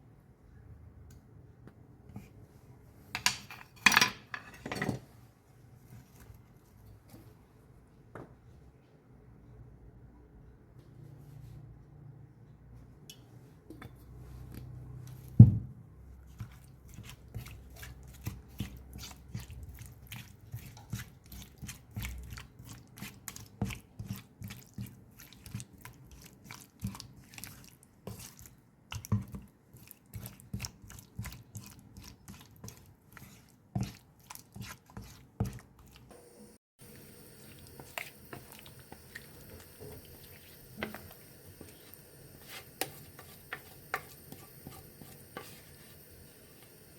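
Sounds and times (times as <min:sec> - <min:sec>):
utensil strokes on board: 0:39.2 - 0:46.7.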